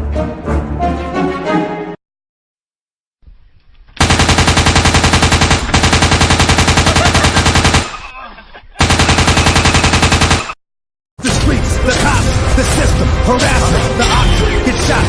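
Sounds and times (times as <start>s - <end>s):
rapid sharp bangs: 4.0s - 8.0s, 8.8s - 10.6s.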